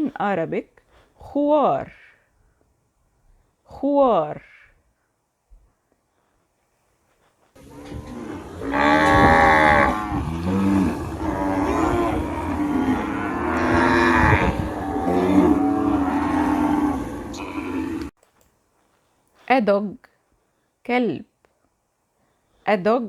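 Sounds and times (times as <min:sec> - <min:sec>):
cows mooing: 0:07.6 - 0:18.1.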